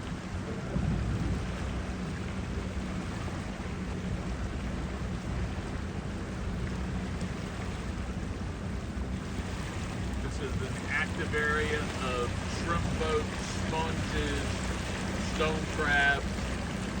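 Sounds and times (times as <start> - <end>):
boat motor running: 0.0 - 17.0
wind noise: 0.4 - 2.1.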